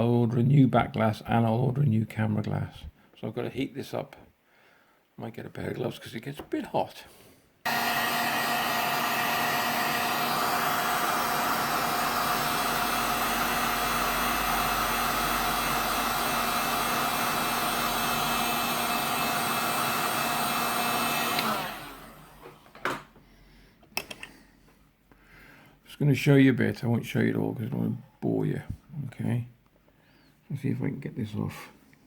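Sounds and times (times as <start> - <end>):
heat gun blowing: 7.6 - 22.6.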